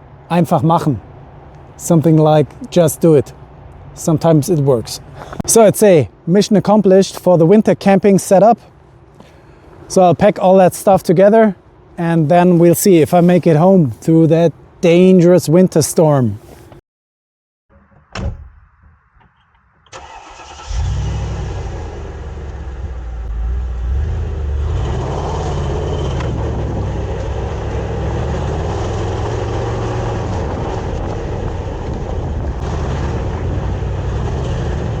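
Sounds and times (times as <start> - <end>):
car engine starting and running: 19.9 - 35.0.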